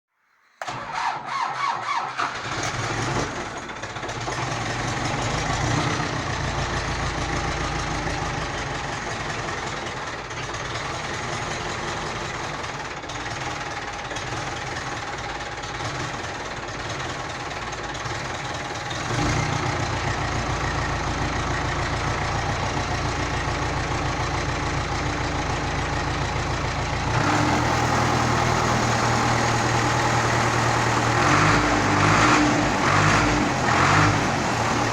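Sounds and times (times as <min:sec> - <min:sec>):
diesel tractor engine running: 0:00.6 - 0:34.9.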